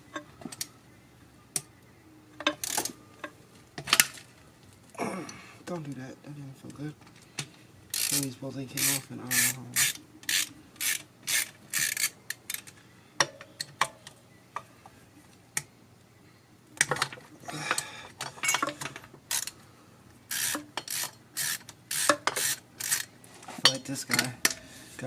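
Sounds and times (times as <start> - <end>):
ratchet rasping: 7.9 - 8.2, 8.8 - 12.7, 20.3 - 23.1
tools clinking on engine parts: 17.5 - 19.0.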